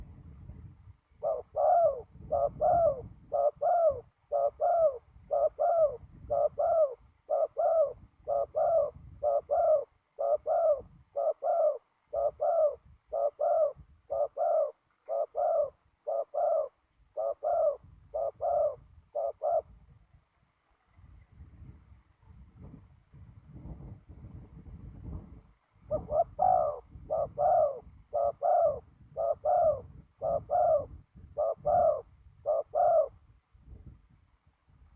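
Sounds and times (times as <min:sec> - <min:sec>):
wind rumble on microphone: 0:00.0 - 0:34.9
dove cooing: 0:01.1 - 0:19.9, 0:25.8 - 0:33.2.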